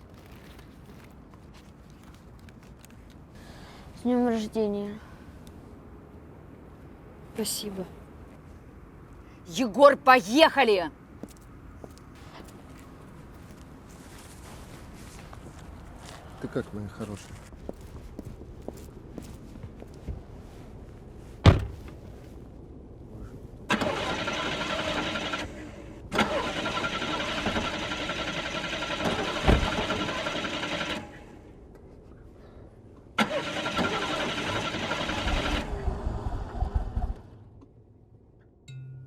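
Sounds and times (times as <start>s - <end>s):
car engine cranking and starting: 21.4s - 22.1s, 23.7s - 31.4s, 33.1s - 37.4s.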